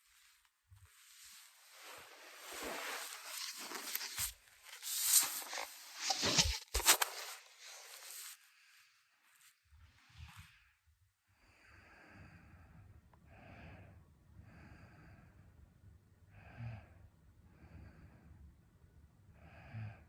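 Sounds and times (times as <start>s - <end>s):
bedding rustling: 0.0s - 8.4s.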